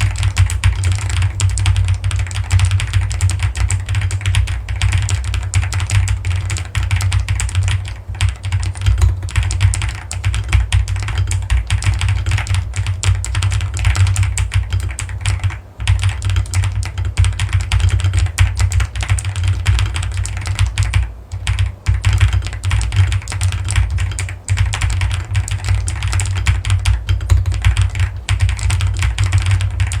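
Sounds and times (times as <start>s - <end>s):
typing on mechanical keyboard: 0.0s - 30.0s.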